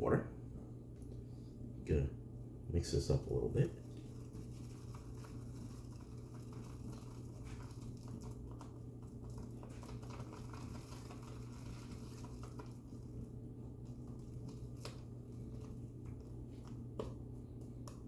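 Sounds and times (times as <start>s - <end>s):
brush whisking soap lather: 3.6s - 18.0s.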